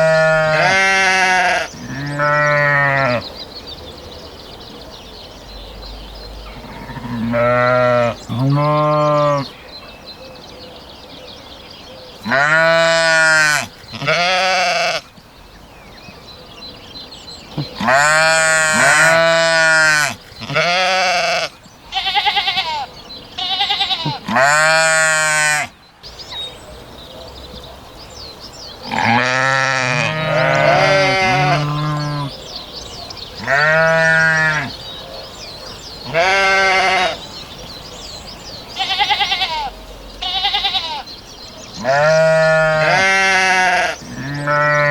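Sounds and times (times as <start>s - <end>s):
sheep bleating: 0.0s - 3.2s, 6.5s - 9.5s, 12.3s - 15.1s, 17.6s - 25.7s, 28.9s - 32.3s, 33.4s - 34.7s, 36.0s - 37.2s, 38.8s - 41.1s, 41.8s - 44.9s.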